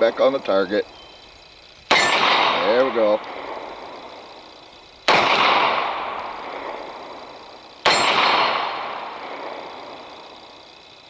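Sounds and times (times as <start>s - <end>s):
pistol shots with echo: 1.9s - 4.2s, 5.0s - 10.2s.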